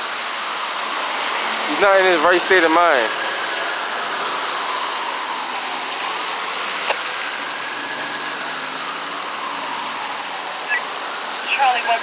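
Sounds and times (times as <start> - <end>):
highway traffic hiss: 10.5 - 12.0.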